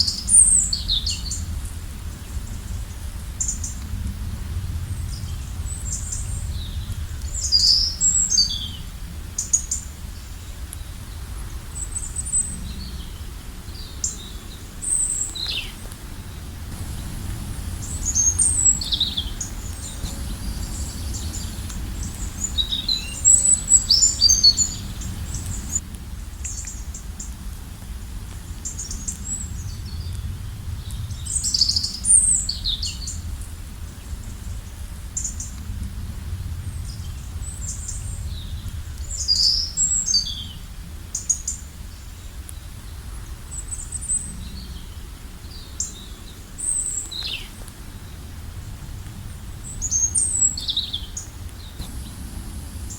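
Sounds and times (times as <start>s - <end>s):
songbirds chirping: 5.0s - 25.8s, 49.3s - 52.9s
flowing river water: 16.7s - 25.8s.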